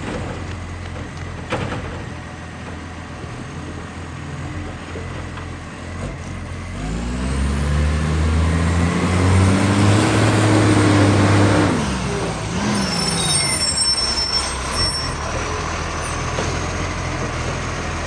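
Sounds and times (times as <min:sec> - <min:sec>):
diesel engine revving: 0:05.5 - 0:18.0.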